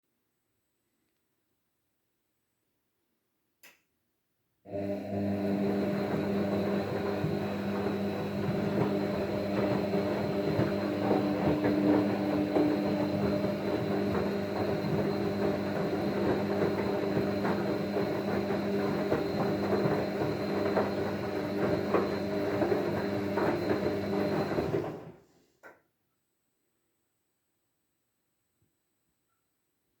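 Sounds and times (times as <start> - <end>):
washing machine running: 4.7 - 25.3.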